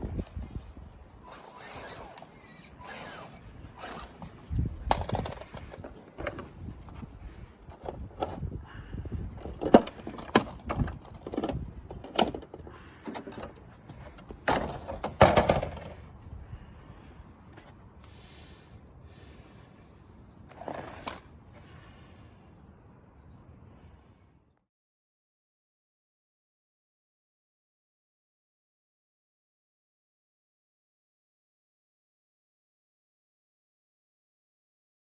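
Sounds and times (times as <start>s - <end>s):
rc car parts knocking: 1.4s - 6.4s, 9.3s - 16.0s.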